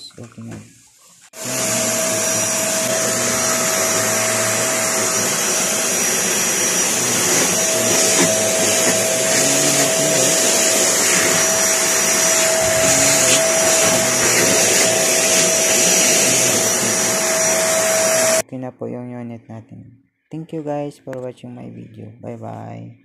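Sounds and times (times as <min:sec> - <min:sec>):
vacuum cleaner running: 0:01.4 - 0:18.4.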